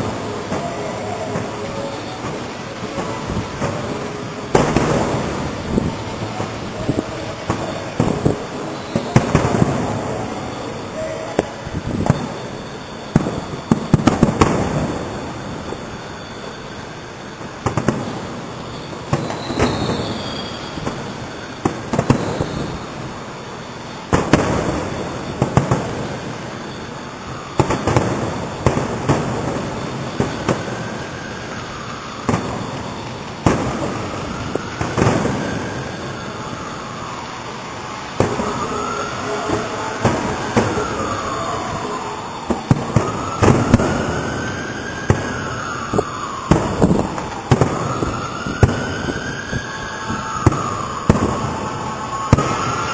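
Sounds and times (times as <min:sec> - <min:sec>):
firework shells bursting: 0:00.0 - 0:16.2, 0:17.6 - 0:23.1, 0:32.2 - 0:35.8
gliding whistle-like tones: 0:00.0 - 0:52.9.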